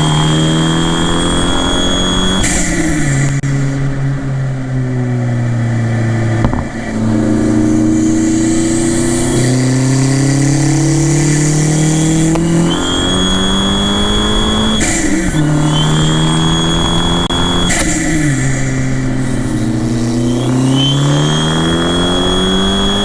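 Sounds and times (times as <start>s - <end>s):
high turbo whistle: 0.0s - 4.2s, 5.5s - 23.0s
car engine accelerating: 0.0s - 23.0s
short rush of air: 14.1s - 23.0s.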